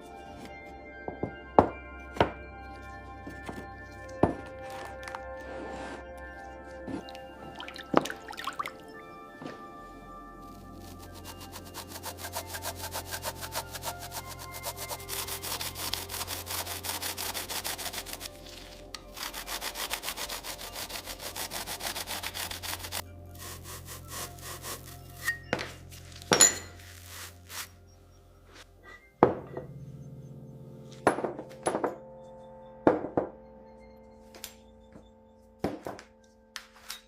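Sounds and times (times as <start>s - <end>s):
saw or file scraping metal: 10.4s - 27.7s
metallic clinks and knocks: 26.3s - 26.8s.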